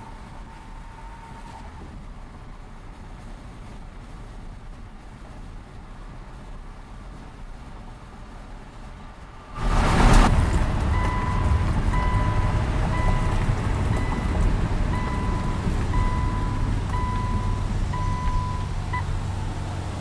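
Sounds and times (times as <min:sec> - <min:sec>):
engine and road rumble: 0:00.0 - 0:20.0
loud rush: 0:09.5 - 0:14.6
vehicle warning beeper: 0:10.9 - 0:19.5.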